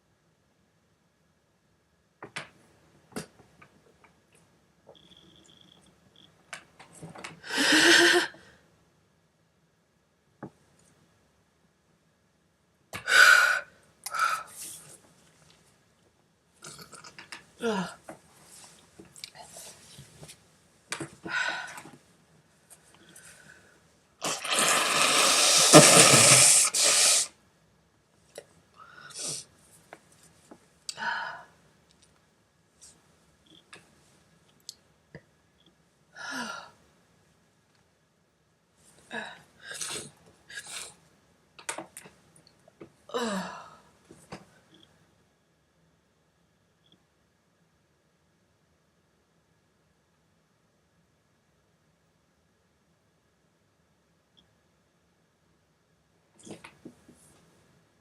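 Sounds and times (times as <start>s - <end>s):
faint high whistle: 5.0s - 6.3s
nose sniffing: 24.2s - 27.3s
woman blowing air forcefully: 24.2s - 27.4s.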